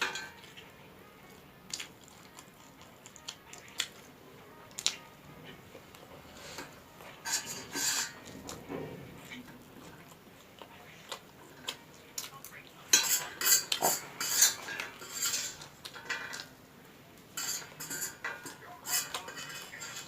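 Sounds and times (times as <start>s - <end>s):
utensil clinking and scraping bowl: 0.0s - 0.6s, 6.3s - 9.6s, 12.9s - 16.5s, 17.4s - 20.0s.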